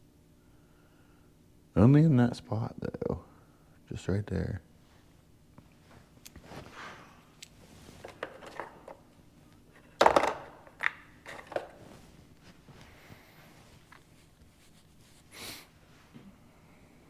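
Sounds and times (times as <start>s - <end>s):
parts clattering on workbench: 8.0s - 9.0s, 9.8s - 11.9s.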